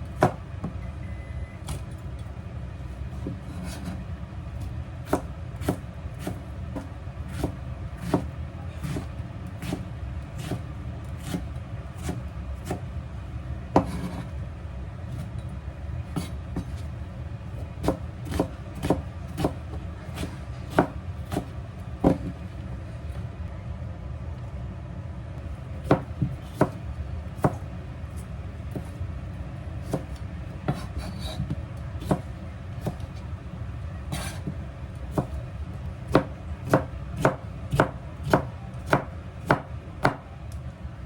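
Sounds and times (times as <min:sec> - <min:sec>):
knife chopping on cutting board: 0:00.2 - 0:00.4, 0:03.2 - 0:04.0, 0:05.0 - 0:12.8, 0:13.7 - 0:14.3, 0:16.1 - 0:16.9, 0:17.8 - 0:22.4, 0:25.8 - 0:26.8, 0:27.4 - 0:27.7, 0:29.8 - 0:33.1, 0:34.1 - 0:35.4, 0:36.1 - 0:40.2.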